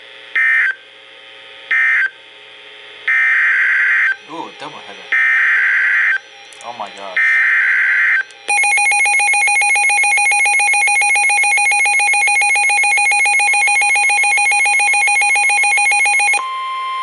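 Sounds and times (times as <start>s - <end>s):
two-tone alert alarm: 7.2s - 17.0s.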